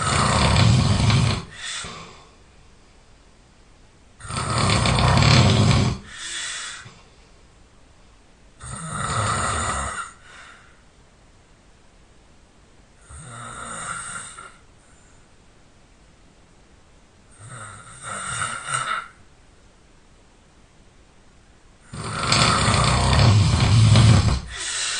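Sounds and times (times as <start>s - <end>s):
person snoring loudly: 0.0s - 2.2s, 4.2s - 6.9s, 8.6s - 10.2s, 13.0s - 14.6s, 17.4s - 19.2s, 21.9s - 24.9s.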